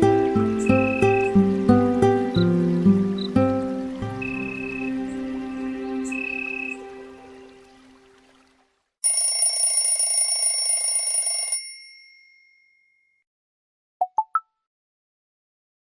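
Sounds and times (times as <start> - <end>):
phone melody: 0.6 - 1.4, 4.2 - 5.0
bell-like electronic ring: 9.0 - 13.2.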